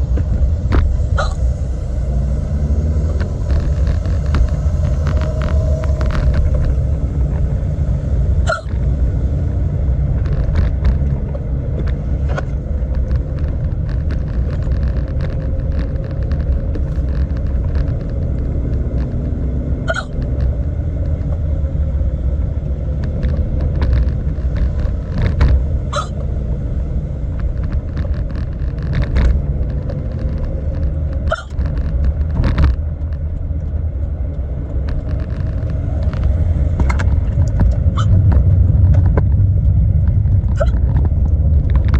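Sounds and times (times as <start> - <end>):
car cabin rumble: 0.0 - 41.9
woman hiccuping: 1.2 - 1.4, 8.5 - 8.7, 19.9 - 20.2, 25.9 - 26.2, 31.3 - 31.5.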